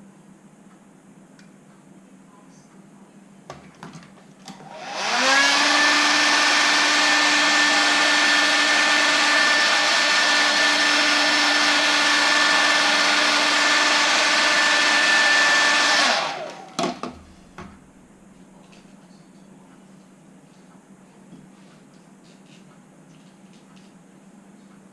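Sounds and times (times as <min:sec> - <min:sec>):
heat gun fan whine: 0:04.4 - 0:19.1.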